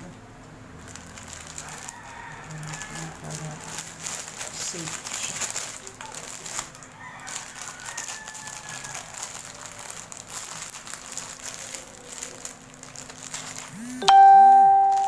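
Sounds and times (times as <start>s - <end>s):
plastic crinkling: 0.7s - 13.8s, 14.6s - 15.0s
loud ringing tone: 13.8s - 15.0s.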